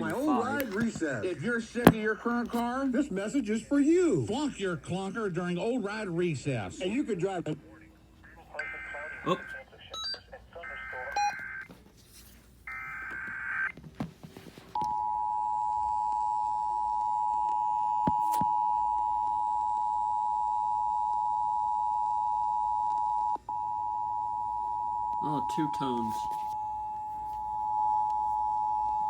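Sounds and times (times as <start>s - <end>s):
two-tone attention signal: 8.6s - 11.4s, 23.5s - 28.8s.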